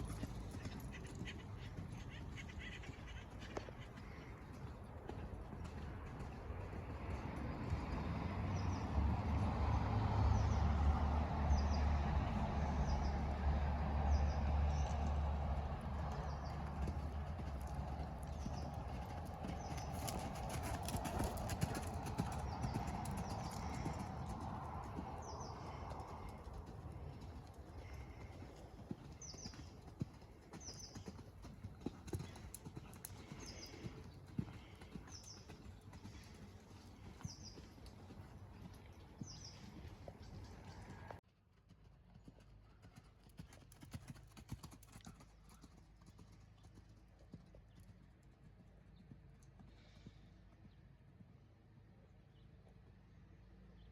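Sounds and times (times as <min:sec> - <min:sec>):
horse hoofbeats: 0:00.0 - 0:08.8, 0:14.7 - 0:41.2.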